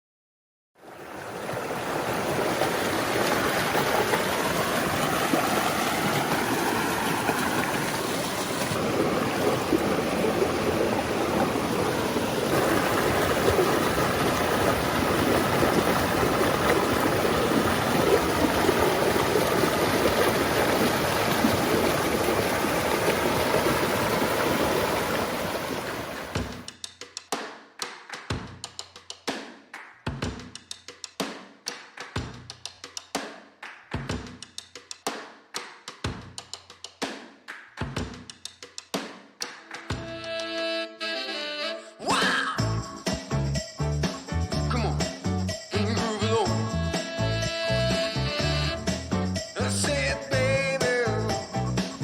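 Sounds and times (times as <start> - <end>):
river rushing over rocks: 0.9 - 26.6.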